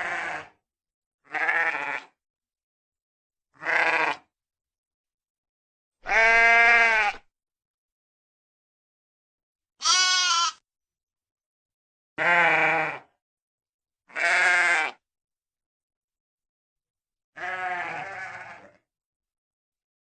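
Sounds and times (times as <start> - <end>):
sheep bleating: 0.0 - 0.6, 1.2 - 2.2, 3.6 - 4.3, 6.0 - 7.2, 9.8 - 10.6, 12.2 - 13.1, 14.1 - 15.0, 17.4 - 18.8.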